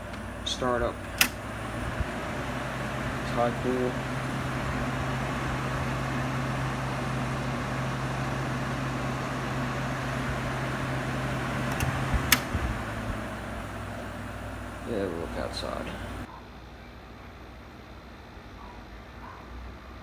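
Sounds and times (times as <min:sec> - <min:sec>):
low compressor hum: 0:00.0 - 0:16.3
air conditioner fan blowing: 0:00.0 - 0:16.4
sharp clicks: 0:01.0 - 0:01.5, 0:11.7 - 0:12.6.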